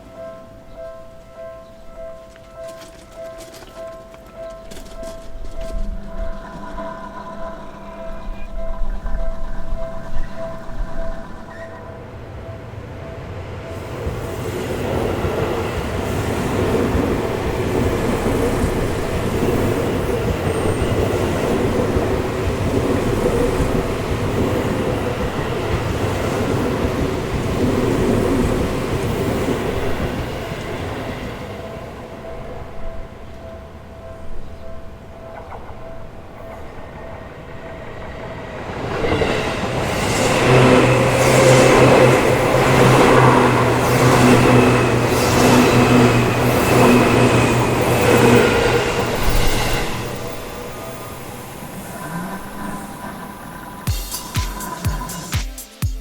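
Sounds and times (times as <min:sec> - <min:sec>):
electric train wheels on rails: 0:00.0 - 0:55.7.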